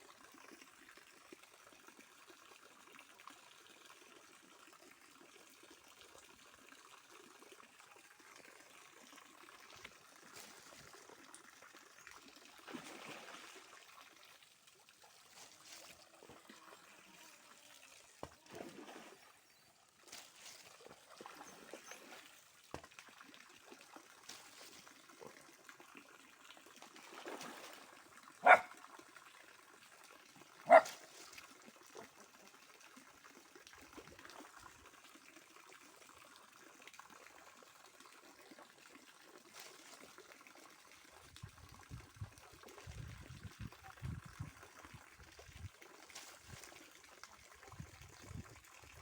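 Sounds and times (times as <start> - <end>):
faint trickle of water: 0.0 - 49.0
dog barking: 28.4 - 28.8, 30.6 - 31.0.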